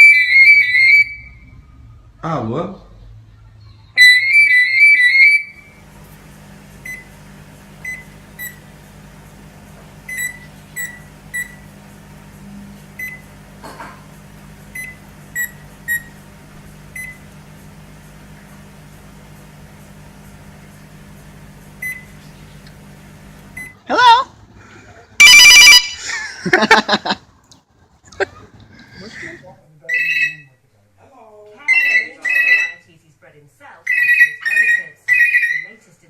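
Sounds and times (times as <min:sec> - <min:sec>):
cockatiel warbling trill: 0:00.0 - 0:01.4, 0:04.0 - 0:05.7, 0:25.2 - 0:26.0, 0:29.9 - 0:30.5, 0:31.6 - 0:32.8, 0:33.9 - 0:35.8
steady low hum: 0:05.4 - 0:25.2.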